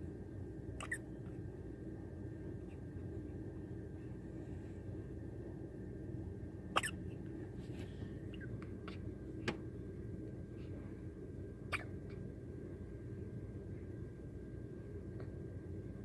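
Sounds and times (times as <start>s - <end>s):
steady low hum: 0.0s - 16.0s
baby hiccuping: 6.8s - 7.0s.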